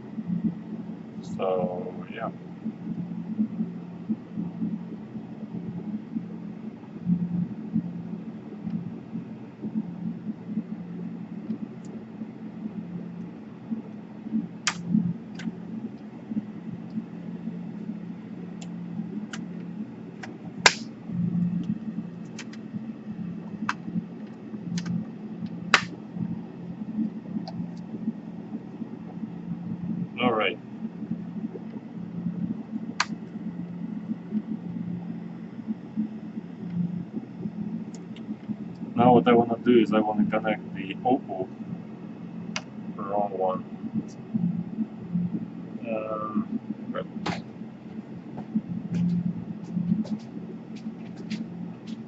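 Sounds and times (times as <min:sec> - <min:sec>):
steady low hum: 0:00.0 - 0:52.0
laptop parts clicking: 0:14.7 - 0:15.5, 0:25.7 - 0:26.0.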